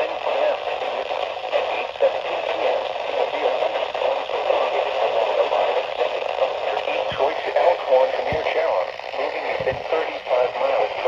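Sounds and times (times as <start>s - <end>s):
radio static hiss: 0.0s - 11.0s.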